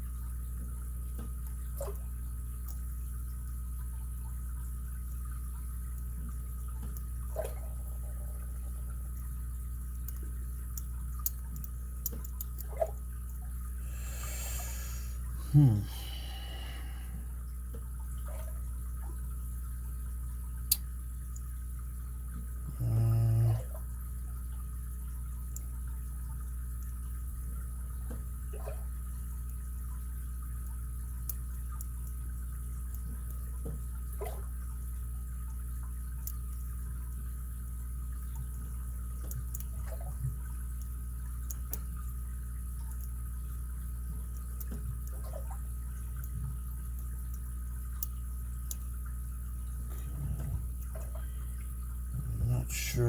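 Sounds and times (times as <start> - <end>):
low hum: 0.0 - 53.0.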